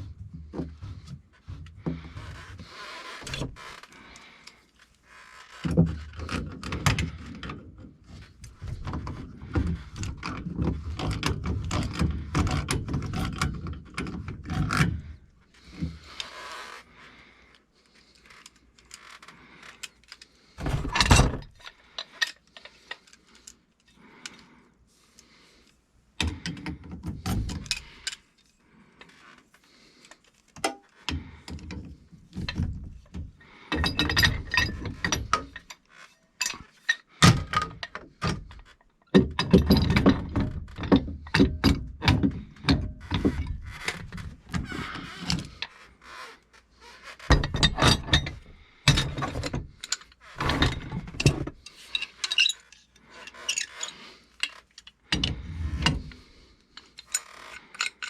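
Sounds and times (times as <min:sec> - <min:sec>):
hand tools clicking and knocking: 0:20.6 - 0:23.2, 0:30.6 - 0:45.8, 0:47.2 - 0:58.0.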